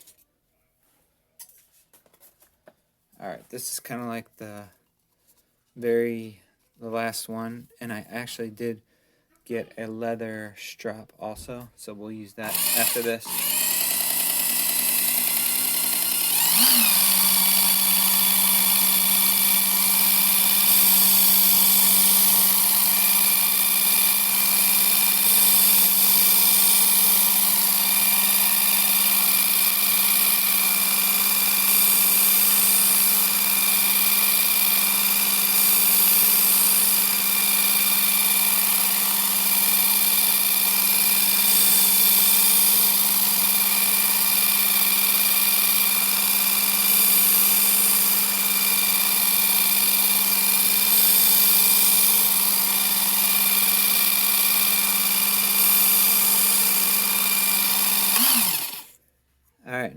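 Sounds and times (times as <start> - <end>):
electric sharpener motor whine: 12.4 - 59.0.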